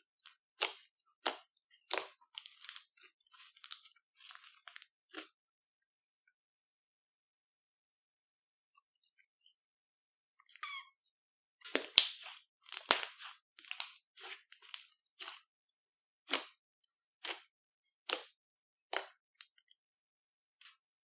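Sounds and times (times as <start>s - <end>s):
slime squishing and popping: 0.2s - 5.3s, 11.7s - 15.4s.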